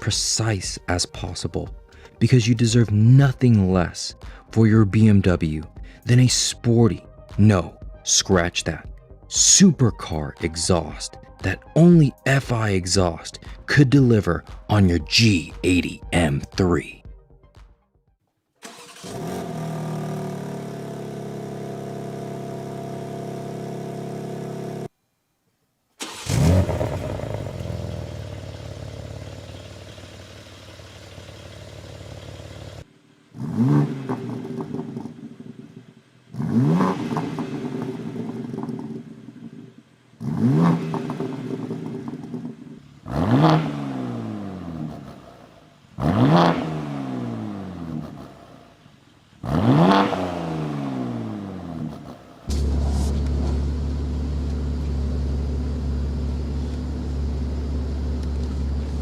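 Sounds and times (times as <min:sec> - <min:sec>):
car engine idling and revving: 0:18.6 - 0:25.0, 0:26.0 - 0:59.0.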